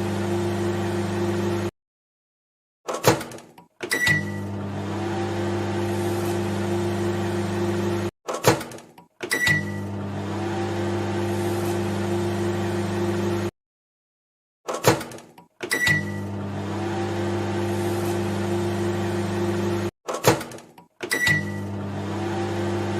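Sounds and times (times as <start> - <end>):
microwave oven humming: 0.0 - 1.7, 4.0 - 8.1, 9.4 - 13.5, 15.8 - 19.9, 21.2 - 22.9.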